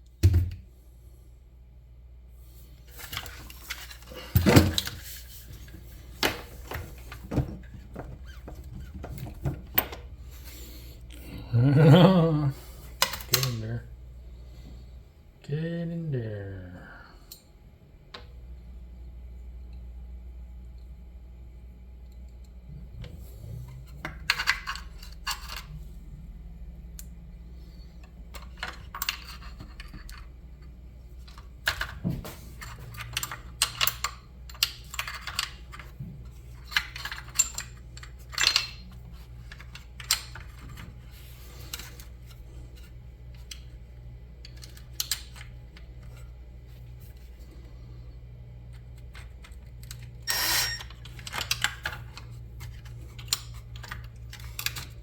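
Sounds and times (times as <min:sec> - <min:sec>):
steady low hum: 0:00.0 - 0:55.0
metal tools clinking: 0:36.5 - 0:40.8.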